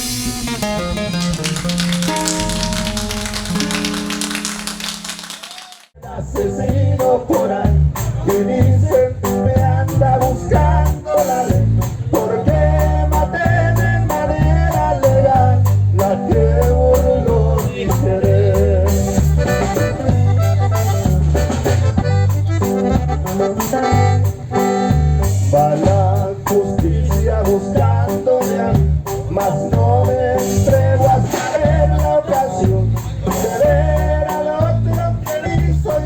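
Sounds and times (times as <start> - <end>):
band playing: 0.0 - 5.9
shaker percussion: 0.0 - 5.9.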